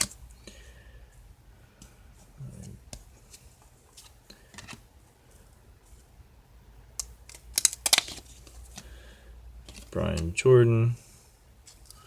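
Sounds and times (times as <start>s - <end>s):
cards shuffling: 0.0s - 0.2s, 2.5s - 4.9s, 7.0s - 9.0s, 9.6s - 10.3s
card stock snapping and crackling: 7.0s - 8.8s.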